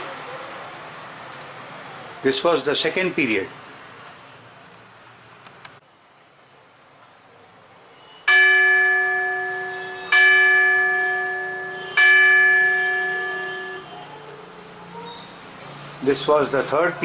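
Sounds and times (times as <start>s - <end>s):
electronic gong bell strokes: 8.3s - 14.0s.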